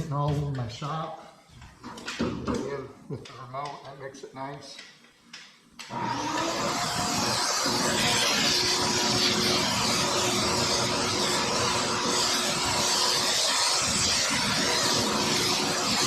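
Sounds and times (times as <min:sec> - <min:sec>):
dust extractor running: 0:05.9 - 0:16.0.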